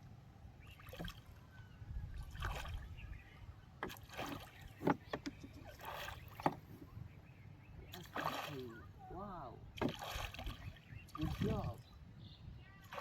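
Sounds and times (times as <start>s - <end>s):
water splashing and sloshing: 0.6s - 1.5s, 2.1s - 7.0s, 7.8s - 11.9s.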